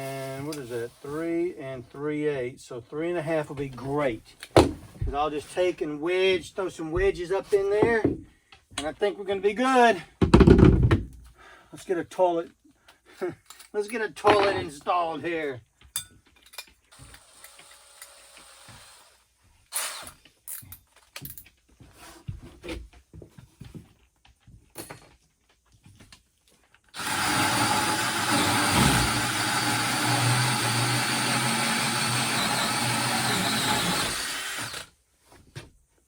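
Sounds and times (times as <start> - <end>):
power drill cutting through floor: 0.0 - 1.2, 16.9 - 20.2, 26.9 - 34.9.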